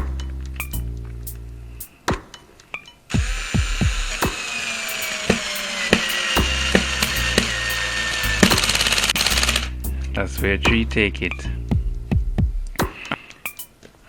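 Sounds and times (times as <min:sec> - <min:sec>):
screw gun motor whine: 0:03.1 - 0:09.7
clutch ratcheting: 0:04.2 - 0:09.7.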